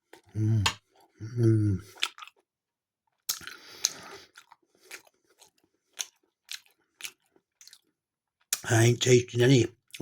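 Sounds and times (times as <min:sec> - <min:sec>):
wet chewing clicks: 0:01.8 - 0:02.5, 0:03.1 - 0:08.6.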